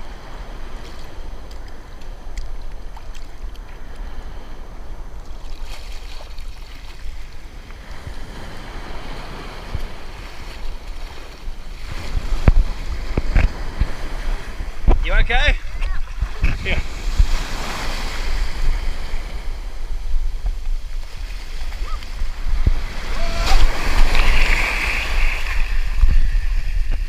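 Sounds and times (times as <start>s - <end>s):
wind buffeting microphone: 6.9s - 27.0s
ocean surf breaking: 7.0s - 27.0s
low rumbles and thumps: 22.2s - 24.2s.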